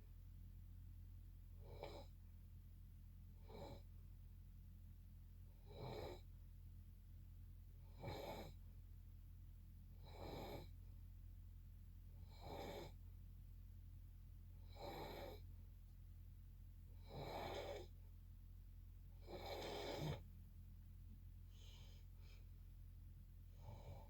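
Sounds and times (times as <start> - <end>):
steady low hum: 0.0 - 24.0
person snoring: 17.0 - 17.9, 19.2 - 20.2.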